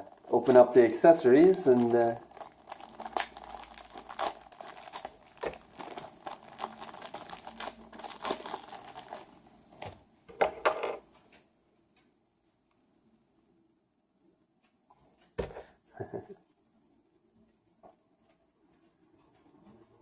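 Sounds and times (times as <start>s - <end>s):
packaging crinkling and tearing: 0.0s - 10.0s.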